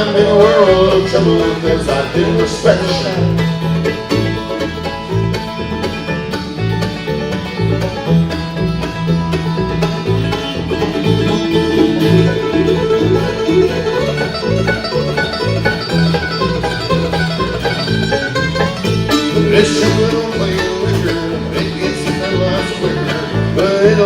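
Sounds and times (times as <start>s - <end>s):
string band playing bluegrass: 0.0s - 24.0s.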